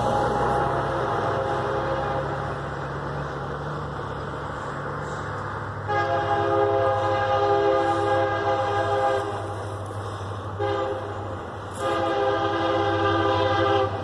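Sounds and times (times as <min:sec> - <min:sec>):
locomotive air horn blasts: 0:00.0 - 0:02.8, 0:05.8 - 0:14.0
diesel locomotive rumble: 0:00.0 - 0:14.0.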